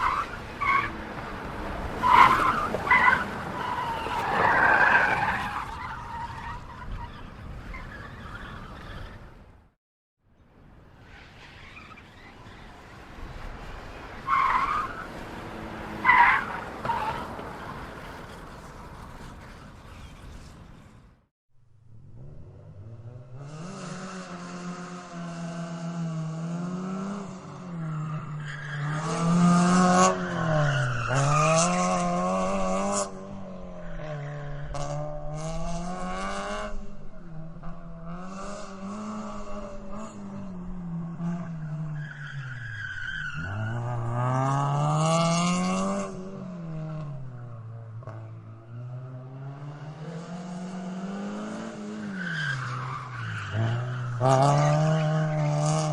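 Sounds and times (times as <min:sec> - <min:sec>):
car tyres screeching: 0:00.0 - 0:09.6, 0:10.9 - 0:21.2, 0:26.4 - 0:55.9
car engine revving: 0:43.3 - 0:55.9.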